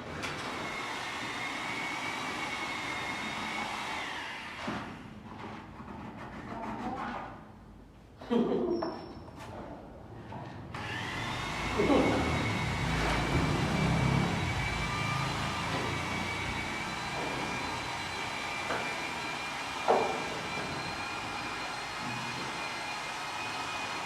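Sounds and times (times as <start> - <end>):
machine motor whining: 10.8 - 24.0.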